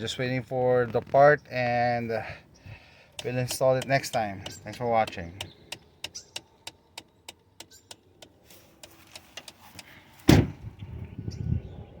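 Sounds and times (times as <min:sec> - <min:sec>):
loud thump: 0:10.2 - 0:10.6.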